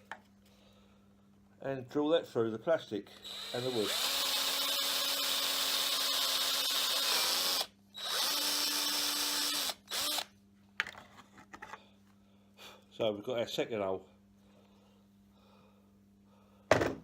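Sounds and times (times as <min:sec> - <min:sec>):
electric drill drilling: 0:03.1 - 0:10.3.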